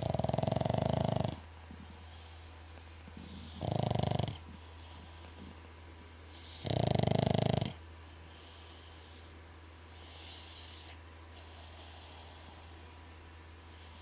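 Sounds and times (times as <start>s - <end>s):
soft breathy breath: 8.0s - 14.0s.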